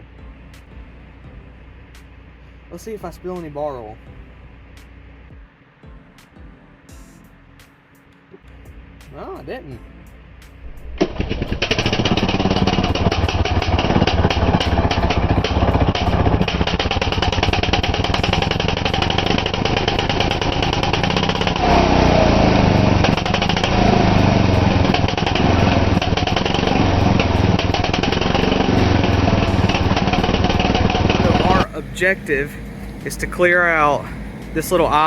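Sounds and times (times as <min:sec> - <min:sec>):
two-stroke chainsaw running: 0:11.0 - 0:35.0.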